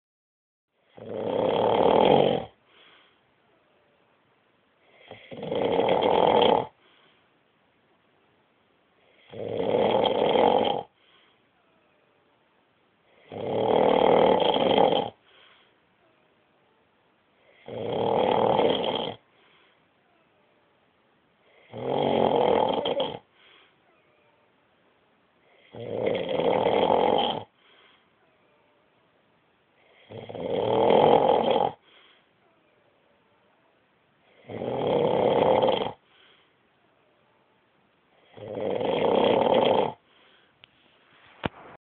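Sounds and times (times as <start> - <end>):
man snoring: 0.9 - 2.6, 4.9 - 6.8, 9.1 - 11.0, 13.1 - 15.2, 17.4 - 19.2, 21.4 - 23.3, 25.5 - 27.5, 29.8 - 31.8, 34.3 - 36.0, 38.2 - 40.0
faint breath out: 2.6 - 3.7, 6.8 - 7.4, 10.9 - 12.3, 15.2 - 17.7, 19.3 - 20.4, 23.3 - 24.5, 27.5 - 28.9, 31.8 - 33.1, 36.0 - 37.1, 40.0 - 41.5.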